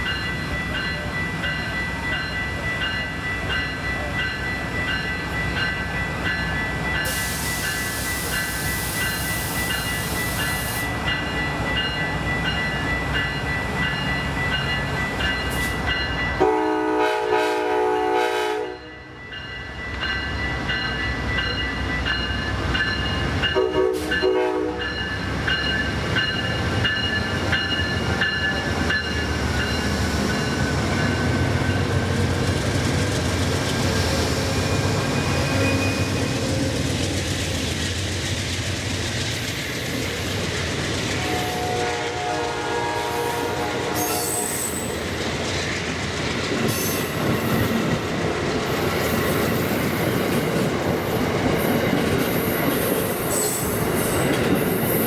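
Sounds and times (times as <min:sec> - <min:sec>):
train rumbling: 0:00.0 - 0:55.0
hiss: 0:07.0 - 0:11.0
train horn: 0:16.4 - 0:19.2, 0:23.5 - 0:24.9, 0:41.2 - 0:44.9.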